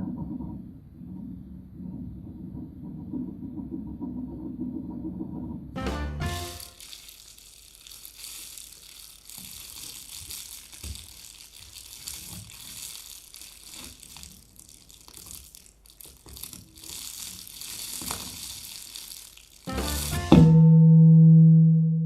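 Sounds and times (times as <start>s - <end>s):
scratchy rattling: 6.4s - 20.3s.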